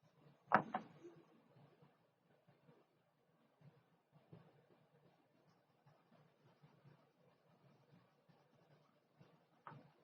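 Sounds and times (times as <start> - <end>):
faint scratch or tap: 3.6 - 10.0.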